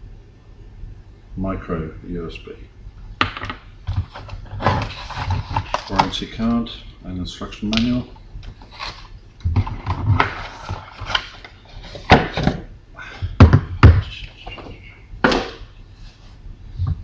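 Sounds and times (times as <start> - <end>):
objects knocking on a surface: 3.2 - 4.8
packaging rustling: 3.9 - 6.3, 7.8 - 12.5.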